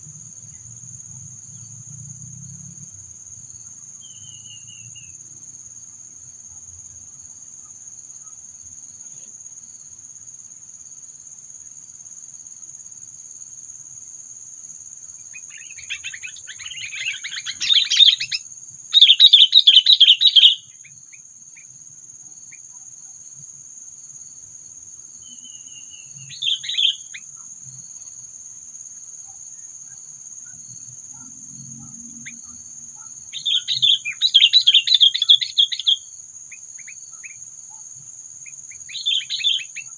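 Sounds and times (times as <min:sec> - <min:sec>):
high insect buzz: 0:00.0 - 0:39.9
birds chattering song: 0:15.5 - 0:18.4, 0:19.0 - 0:20.6, 0:33.4 - 0:36.0, 0:38.8 - 0:39.9.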